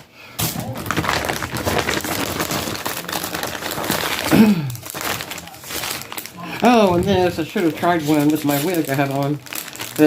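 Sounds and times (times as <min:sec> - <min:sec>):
plastic bag crinkling: 0:00.4 - 0:10.0.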